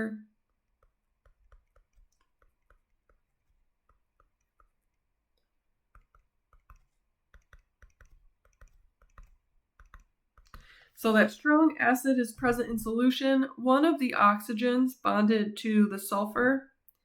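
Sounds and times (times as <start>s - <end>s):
stylus tapping on drawing tablet: 0.4s - 4.9s, 5.9s - 10.8s.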